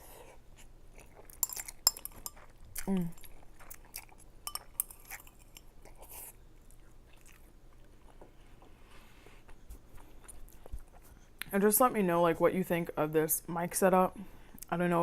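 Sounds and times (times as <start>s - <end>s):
person chewing noodles: 0.0s - 11.5s.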